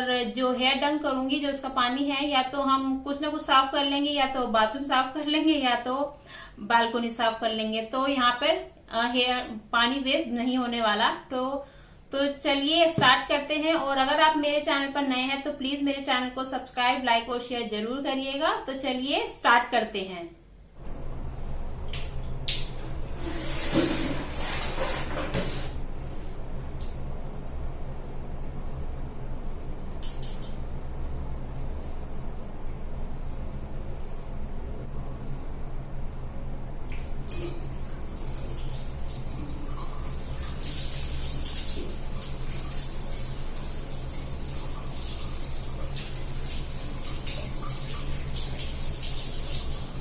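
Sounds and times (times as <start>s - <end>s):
low steady hum: 0.0s - 50.0s
tap water running: 21.8s - 25.8s, 36.9s - 50.0s.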